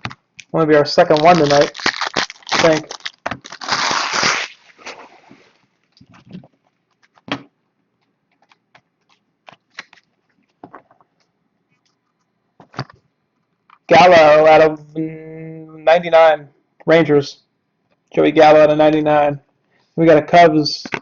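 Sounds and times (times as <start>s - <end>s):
trading cards rustling: 0.4s - 4.9s.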